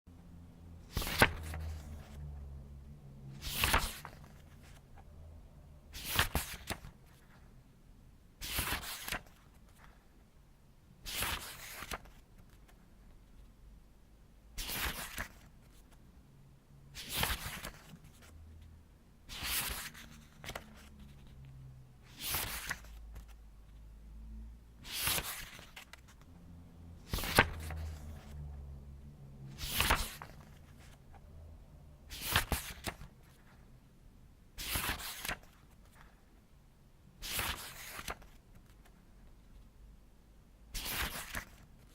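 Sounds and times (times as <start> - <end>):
book pages turning: 0.9 - 2.3, 3.4 - 4.8, 6.0 - 7.4, 8.4 - 10.0, 11.1 - 12.8, 14.6 - 16.0, 17.0 - 18.3, 19.3 - 21.4, 22.1 - 23.4, 24.8 - 26.2, 27.0 - 28.4, 29.5 - 31.2, 32.1 - 33.6, 34.6 - 36.2, 37.2 - 39.0, 40.8 - 41.9.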